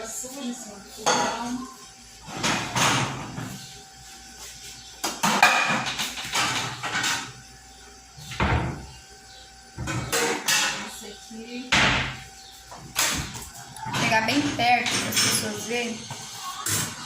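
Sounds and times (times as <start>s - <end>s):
metal pots and pans clattering: 5.2s - 7.4s, 9.8s - 11.0s, 13.0s - 17.0s.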